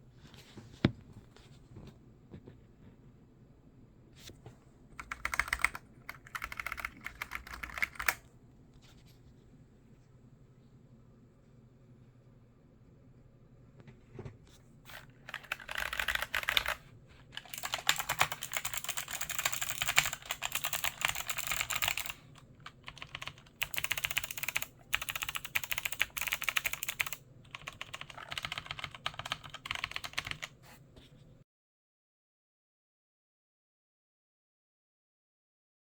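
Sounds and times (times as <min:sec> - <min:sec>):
mechanical keyboard typing: 0:05.0 - 0:08.2, 0:14.9 - 0:16.8, 0:17.4 - 0:30.5.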